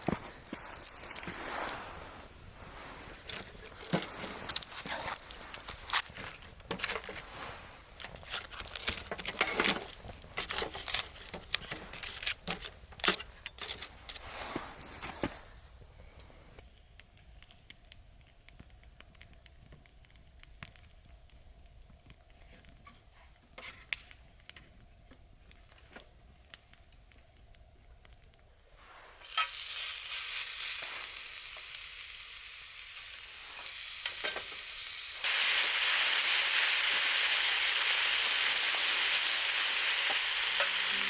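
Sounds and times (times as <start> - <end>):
packaging crinkling and tearing: 3.2 - 14.6.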